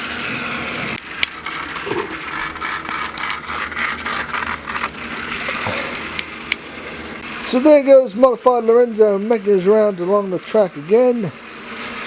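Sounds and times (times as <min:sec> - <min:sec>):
toy train motor whirring: 0:00.9 - 0:06.4
rapid rattling clicks: 0:01.0 - 0:06.6.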